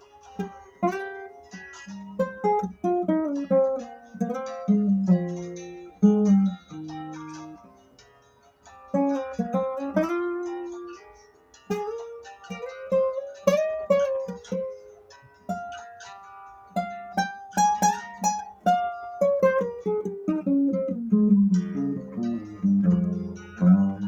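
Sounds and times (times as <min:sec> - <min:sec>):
acoustic guitar melody: 0:00.0 - 0:24.0
plucked bass note: 0:21.1 - 0:24.0.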